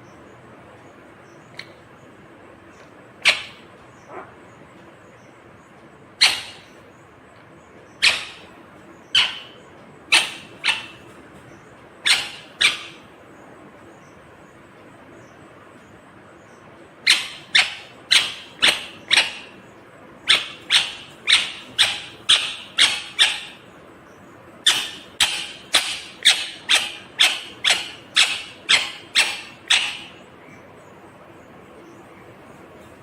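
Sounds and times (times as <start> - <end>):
parakeet sharp calls: 3.2 - 4.4, 6.2 - 6.8, 7.9 - 13.2, 17.0 - 23.8, 24.6 - 30.9.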